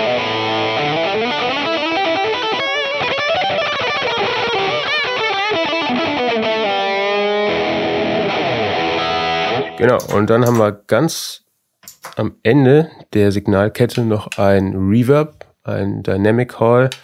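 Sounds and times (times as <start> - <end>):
distorted electric guitar lead: 0.0 - 10.6.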